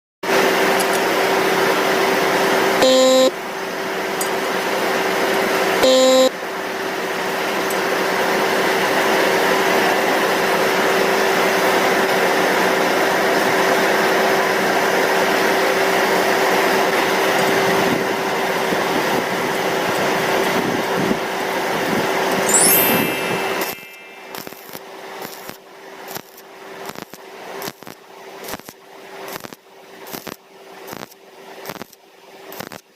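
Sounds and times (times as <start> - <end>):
short horn-like tone: 22.5 - 24.7
welding arc hissing and crackling: 24.3 - 32.9.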